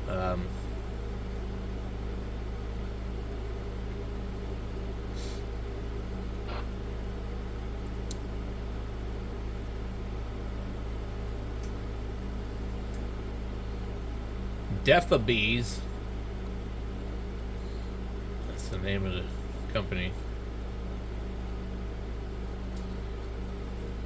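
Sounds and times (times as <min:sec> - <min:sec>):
low background hum: 0:00.0 - 0:24.0
faint short clicks: 0:08.0 - 0:08.3.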